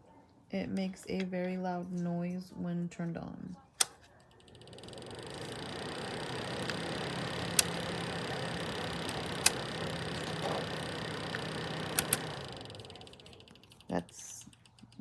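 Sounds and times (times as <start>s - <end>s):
sharp clicks: 3.8s - 15.0s
space heater fan whir and hum: 3.8s - 15.0s.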